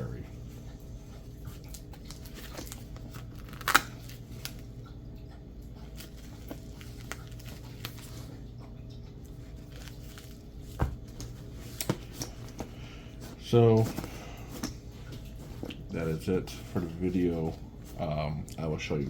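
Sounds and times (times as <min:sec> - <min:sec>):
steady low hum: 0:00.0 - 0:19.0
velcro ripping apart: 0:02.6 - 0:03.9.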